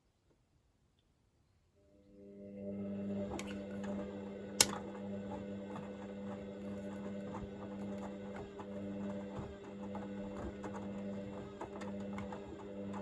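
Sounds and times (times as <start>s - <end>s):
washing machine motor hum: 2.3s - 13.0s.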